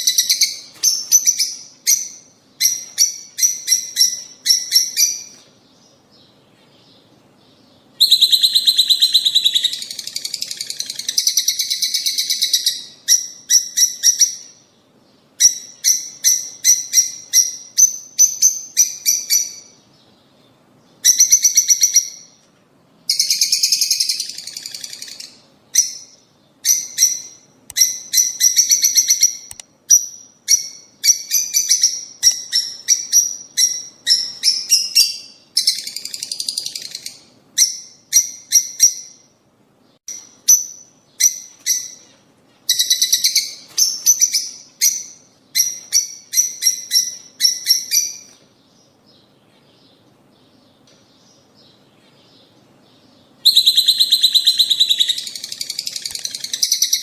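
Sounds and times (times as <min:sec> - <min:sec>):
lovebirds chirping: 0:00.0 - 0:57.0.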